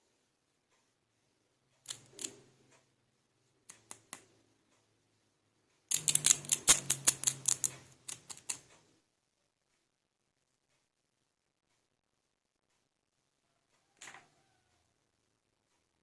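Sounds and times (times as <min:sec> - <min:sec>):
plastic toy pieces clicking: 0:01.9 - 0:02.3, 0:05.9 - 0:08.6.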